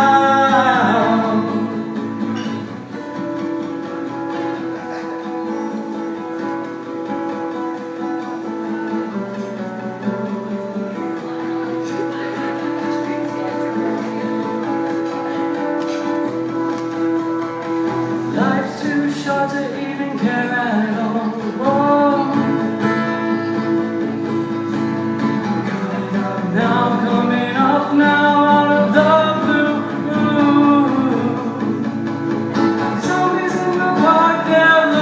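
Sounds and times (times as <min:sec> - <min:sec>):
acoustic guitar strumming: 0:00.0 - 0:35.0.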